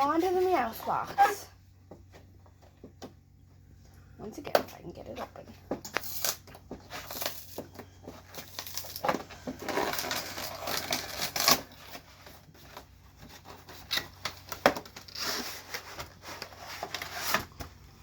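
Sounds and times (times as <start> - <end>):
plastic wrapping crinkling: 5.9 - 17.4
cardboard tearing: 6.0 - 7.6, 8.3 - 17.5.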